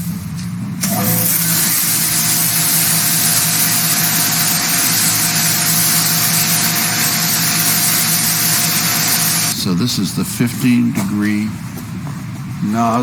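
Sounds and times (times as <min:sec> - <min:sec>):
high-pressure water spray hiss: 0:00.8 - 0:09.6
pressure washer motor humming: 0:00.8 - 0:09.6.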